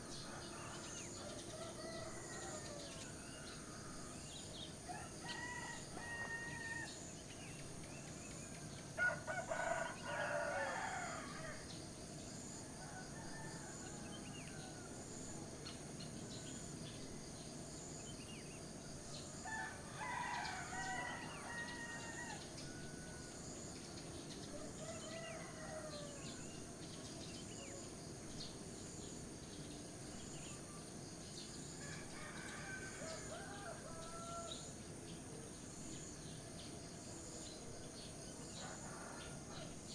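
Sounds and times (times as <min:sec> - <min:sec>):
low background hiss: 0:00.0 - 0:39.9
roosters crowing: 0:09.0 - 0:11.6, 0:19.4 - 0:23.2, 0:31.8 - 0:34.7.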